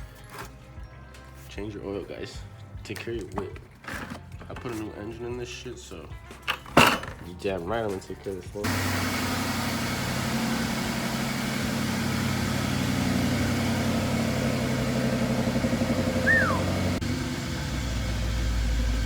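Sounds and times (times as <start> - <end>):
car engine idling: 8.6 - 19.0
short falling squeak: 16.2 - 16.8.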